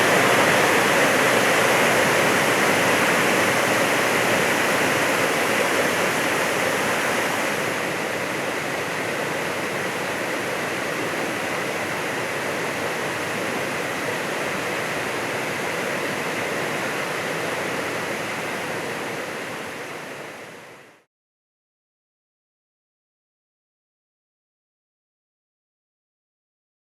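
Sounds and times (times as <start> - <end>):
waterfall rushing: 0.0 - 20.4.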